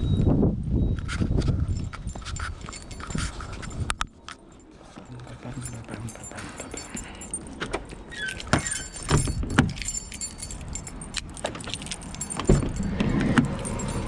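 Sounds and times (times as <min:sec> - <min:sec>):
keys jangling: 0:01.6 - 0:14.0
street traffic rumble: 0:01.6 - 0:14.0
metallic clicks: 0:08.2 - 0:14.0.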